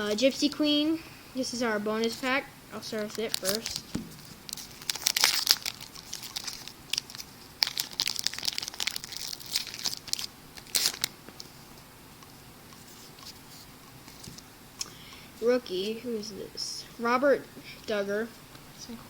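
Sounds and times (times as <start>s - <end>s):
wrapper tearing and crinkling: 3.0s - 11.2s.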